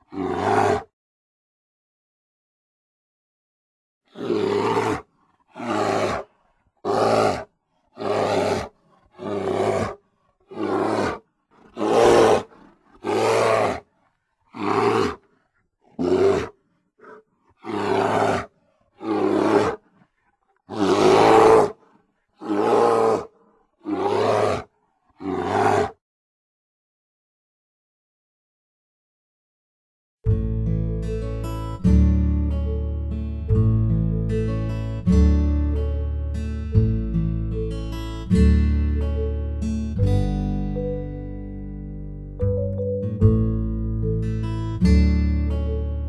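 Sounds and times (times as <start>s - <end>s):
bear roars and growls: 0.0s - 0.9s, 4.1s - 26.0s.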